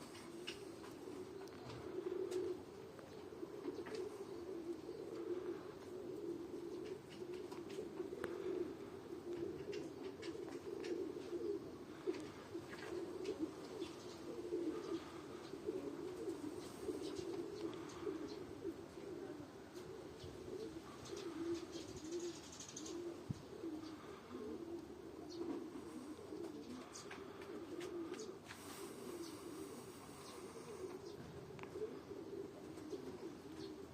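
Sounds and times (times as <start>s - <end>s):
pigeons cooing: 0.0s - 33.9s.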